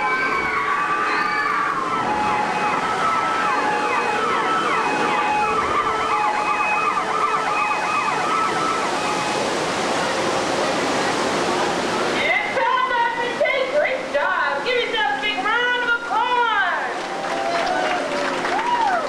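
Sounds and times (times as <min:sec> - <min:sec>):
emergency sirens wailing and yelping: 0:00.0 - 0:10.0
continuous rushing noise: 0:00.0 - 0:19.0.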